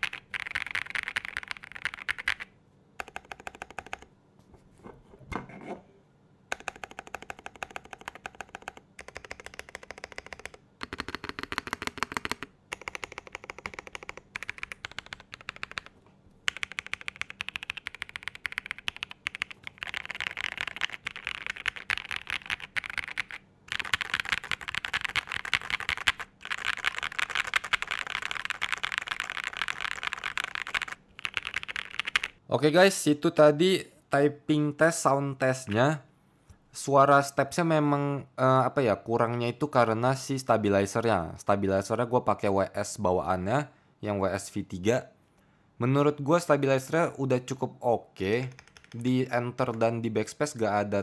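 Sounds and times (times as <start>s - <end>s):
mechanical keyboard typing: 0.0s - 4.1s, 6.5s - 32.4s, 48.5s - 49.1s.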